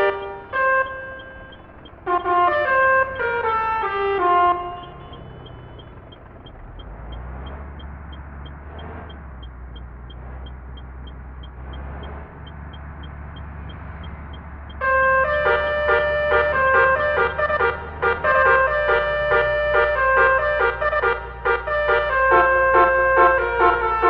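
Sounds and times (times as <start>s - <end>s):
light ticking: 0.0s - 3.9s, 4.7s - 14.8s
bus engine hum: 0.0s - 24.0s
road noise: 0.0s - 24.0s.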